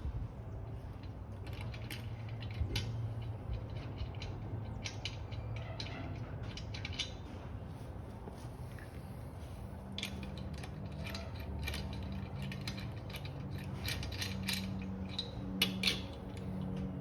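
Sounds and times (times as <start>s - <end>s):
metallic clicks and ratcheting: 1.4s - 7.2s, 10.0s - 16.9s.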